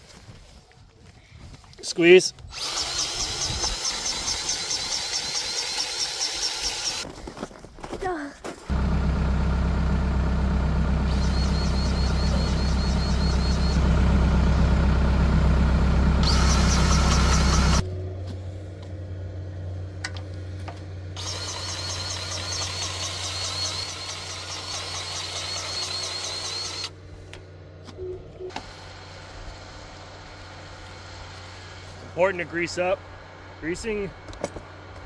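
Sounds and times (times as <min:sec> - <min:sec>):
grease gun motor whining: 0:02.5 - 0:07.0, 0:08.7 - 0:17.8, 0:21.2 - 0:26.9
engine running: 0:08.7 - 0:19.0, 0:21.2 - 0:26.9.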